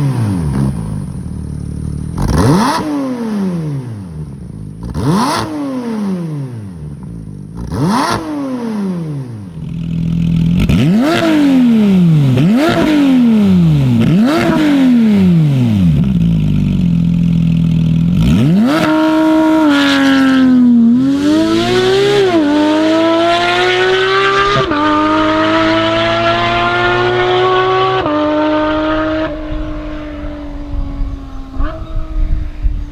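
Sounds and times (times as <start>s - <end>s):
sports car engine revving: 0.0s - 32.9s
car accelerating through gears: 18.1s - 32.9s.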